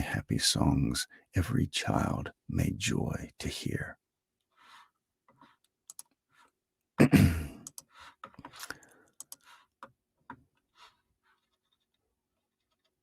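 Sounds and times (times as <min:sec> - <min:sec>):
person sighing: 0:07.0 - 0:07.6.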